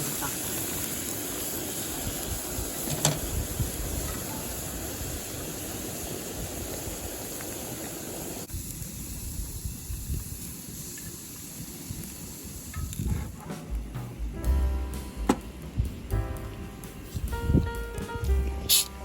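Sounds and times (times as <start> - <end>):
steady hiss: 0.0 - 19.0
wind buffeting microphone: 1.9 - 7.2, 8.5 - 10.7, 17.0 - 17.9.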